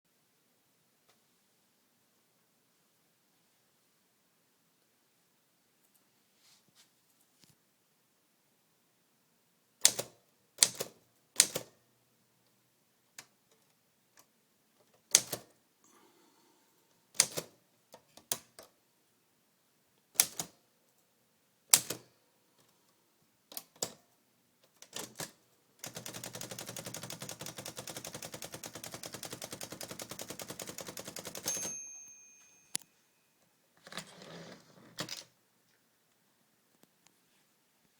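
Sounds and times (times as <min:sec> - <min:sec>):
typewriter keys clicking: 0:09.8 - 0:11.7, 0:17.2 - 0:17.5, 0:20.2 - 0:20.6, 0:24.7 - 0:31.8
typewriter carriage rattle: 0:25.8 - 0:31.8
typewriter bell ring: 0:30.1 - 0:33.4.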